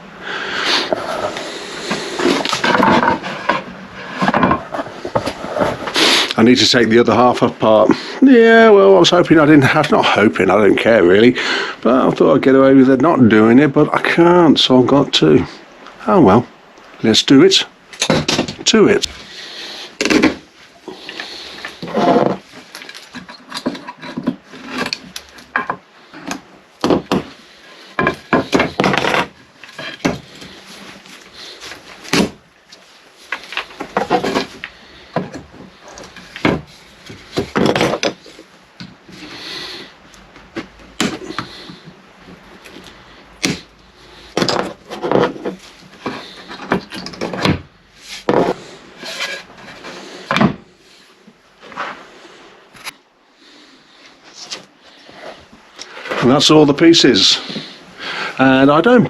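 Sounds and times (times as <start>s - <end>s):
wooden slats knocking and scraping: 0.9s - 6.2s, 17.1s - 50.7s.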